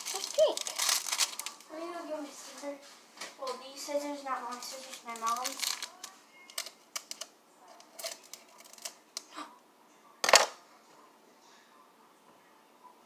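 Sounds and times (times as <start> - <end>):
small objects clicking and tapping: 4.5 - 7.3.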